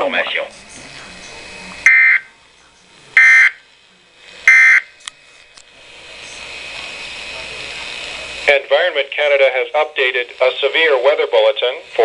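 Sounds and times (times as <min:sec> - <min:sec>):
digital data tone bursts: 0:01.8 - 0:02.3, 0:03.2 - 0:03.6, 0:04.5 - 0:04.9.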